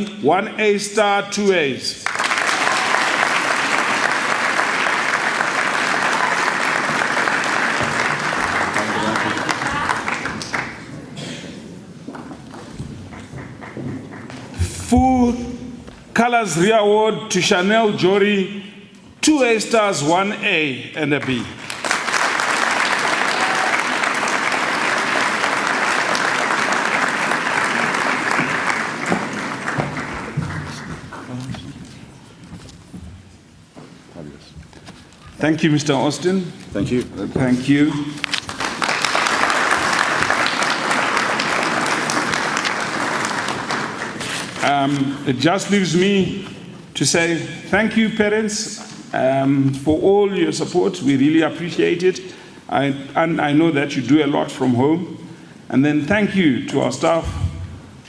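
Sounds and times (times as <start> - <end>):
audience applauding: 2.0 - 11.2, 13.0 - 14.5, 21.2 - 31.6, 38.1 - 44.7
person announcing a name: 14.6 - 21.6.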